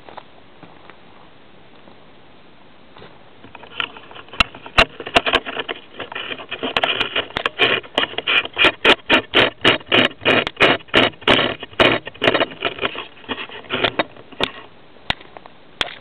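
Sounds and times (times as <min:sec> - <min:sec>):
rhythmic scraping strokes: 0:03.5 - 0:14.7.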